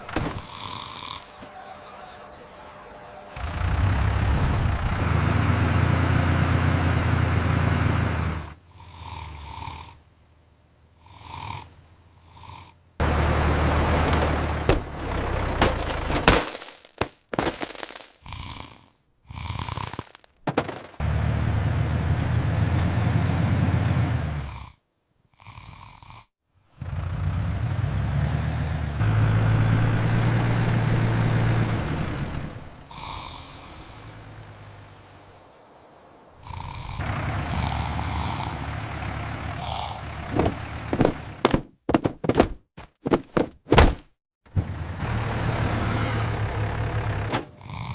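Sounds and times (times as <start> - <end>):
tractor engine rumbling: 0.0 - 9.4, 11.7 - 18.2, 19.7 - 24.5, 26.6 - 42.6, 44.5 - 47.7
crashing and breaking noises: 15.5 - 18.2, 19.9 - 21.0.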